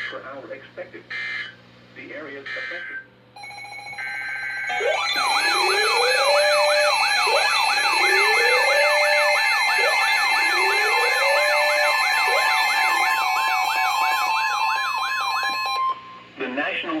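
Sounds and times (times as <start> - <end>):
fast warbling siren: 3.4 - 16.3
steady electronic alert tones: 3.4 - 16.3
rising siren wail: 4.0 - 16.3.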